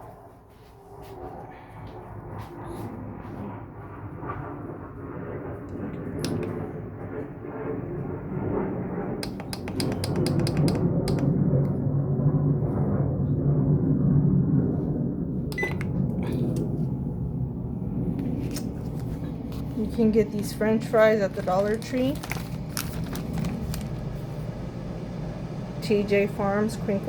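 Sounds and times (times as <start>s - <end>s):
clicks: 9.2s - 11.3s
air fryer fan humming: 9.2s - 11.8s, 15.5s - 27.0s.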